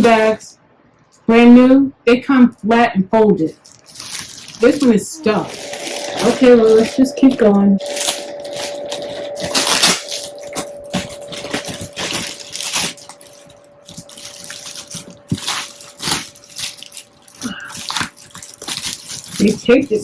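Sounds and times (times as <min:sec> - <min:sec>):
packaging rustling and crinkling: 0:03.5 - 0:07.0, 0:07.8 - 0:20.0
tape tugging: 0:03.6 - 0:06.2, 0:08.0 - 0:19.7
faint steady tone: 0:05.2 - 0:16.0.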